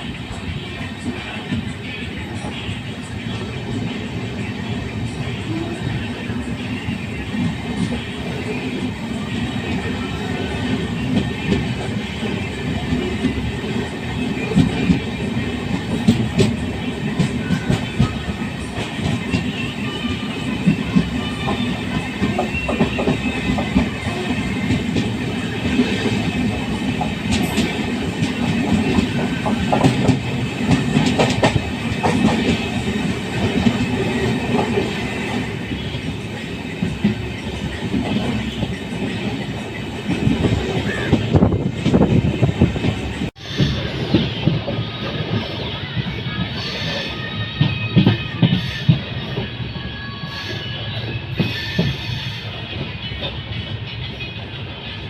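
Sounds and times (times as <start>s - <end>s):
train rumbling: 0.0s - 55.0s.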